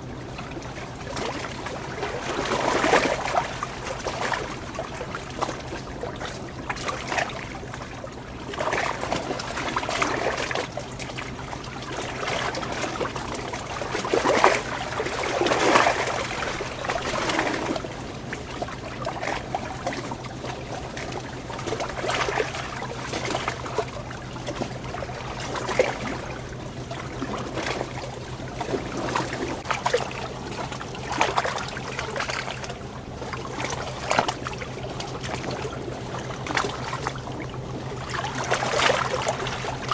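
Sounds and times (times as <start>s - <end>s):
water trickling in stream: 0.0s - 39.9s
steady low hum: 10.8s - 39.9s.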